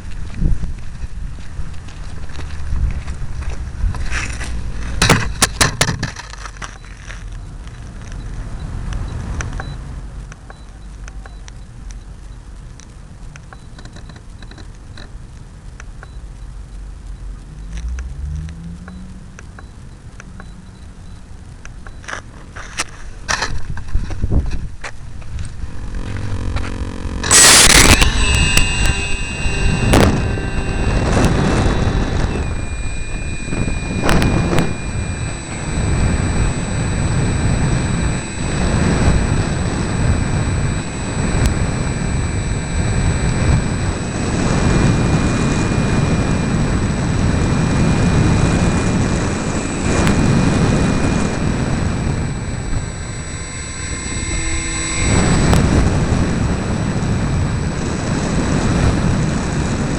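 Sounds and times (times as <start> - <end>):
wind buffeting microphone: 0.0 - 6.0
high-pitched motor whine: 0.0 - 12.6, 16.0 - 22.2, 24.2 - 59.9.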